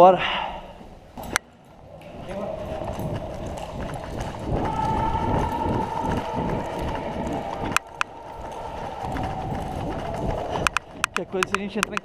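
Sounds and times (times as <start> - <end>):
steady high tone: 2.0 - 11.2.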